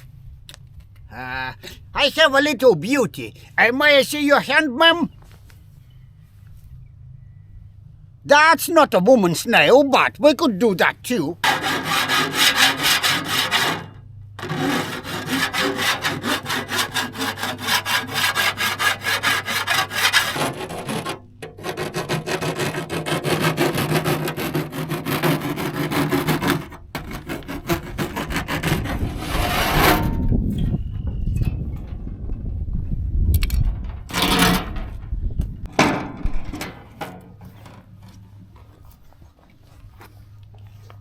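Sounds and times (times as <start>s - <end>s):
file rasping on metal edge: 11.4s - 30.3s, 34.1s - 34.8s.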